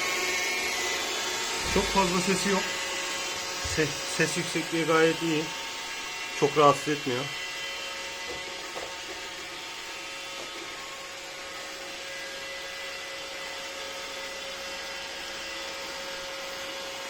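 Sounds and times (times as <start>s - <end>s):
robot vacuum whirring: 0.0s - 13.4s.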